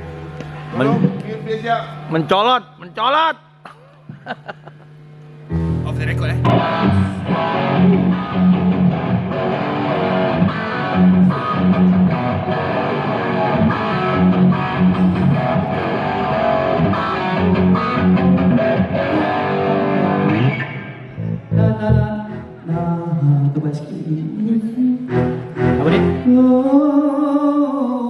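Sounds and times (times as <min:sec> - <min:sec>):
electric guitar runs: 0:04.4 - 0:22.4
live band playing: 0:05.5 - 0:22.9.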